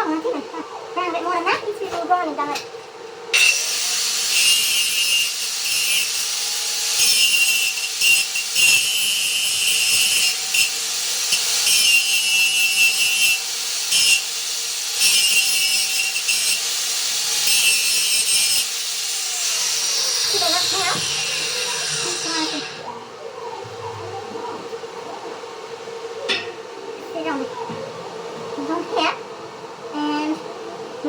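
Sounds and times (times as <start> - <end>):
grinder motor whine: 3.3 - 24.2
grinder disc rasping on steel: 3.4 - 22.8.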